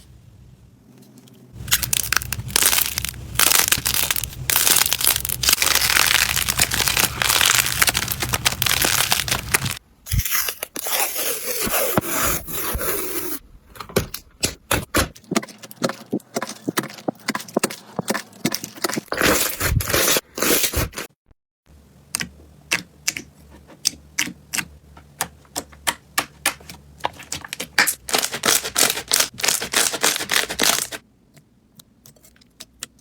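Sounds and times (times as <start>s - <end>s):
slime crackling and popping: 1.6s - 10.4s.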